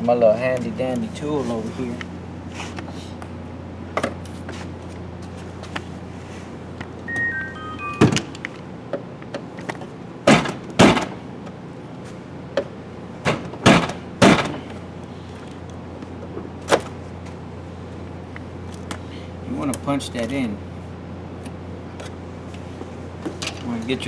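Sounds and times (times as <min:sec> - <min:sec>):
tools knocking against truck door: 0:10.3 - 0:11.2, 0:13.2 - 0:14.6.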